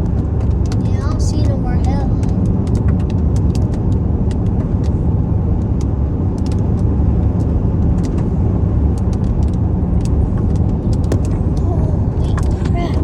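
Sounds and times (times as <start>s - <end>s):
car cabin rumble: 0.0s - 13.0s.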